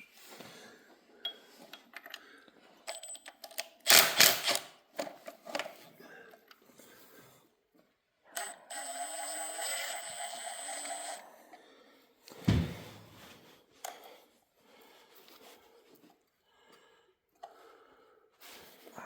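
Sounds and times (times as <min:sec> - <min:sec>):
power tool whining: 0:08.4 - 0:11.2
heavy metal thump: 0:12.5 - 0:13.2.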